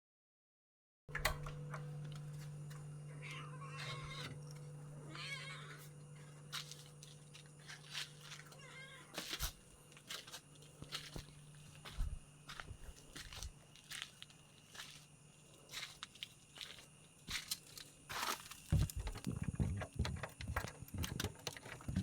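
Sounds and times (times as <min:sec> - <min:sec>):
electrical hum: 0:01.1 - 0:15.8, 0:16.4 - 0:22.0
animal crying out: 0:03.2 - 0:04.4, 0:05.0 - 0:05.9.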